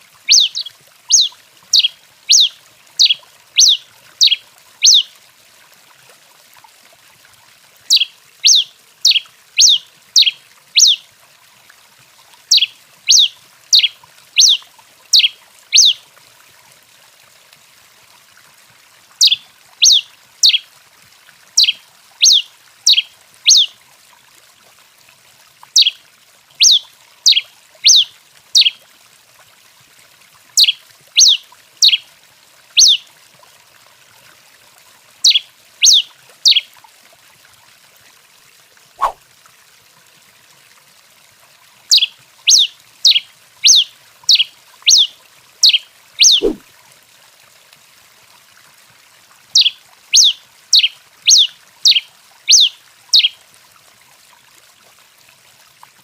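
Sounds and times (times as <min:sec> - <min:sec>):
finch singing high notes: 0:44.9 - 0:46.6.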